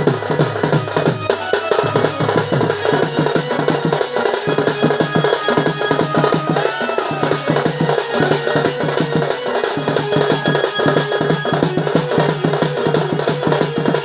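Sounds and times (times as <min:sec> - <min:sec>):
drums in fast rhythm: 0:00.0 - 0:14.0
held high instrument tones: 0:00.0 - 0:14.0.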